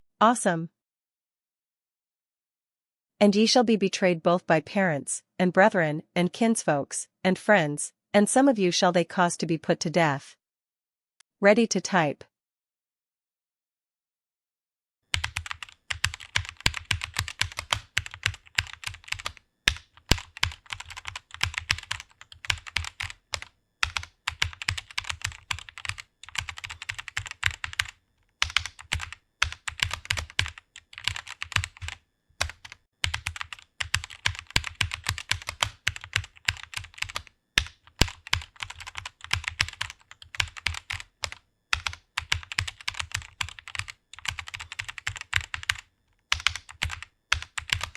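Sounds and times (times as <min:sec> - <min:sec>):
fast keyboard typing: 0:15.1 - 0:47.9.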